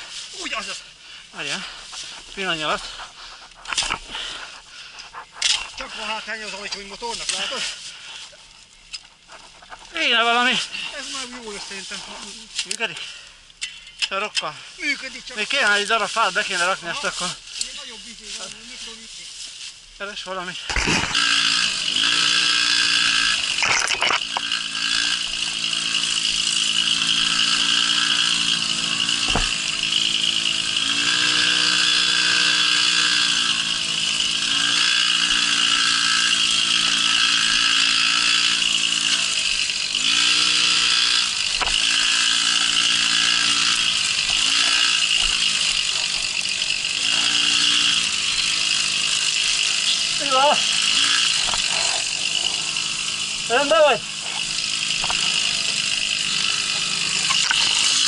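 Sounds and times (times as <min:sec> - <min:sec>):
moped engine running: 0:20.7 - 0:58.0
sharp knocks: 0:29.2 - 0:29.6.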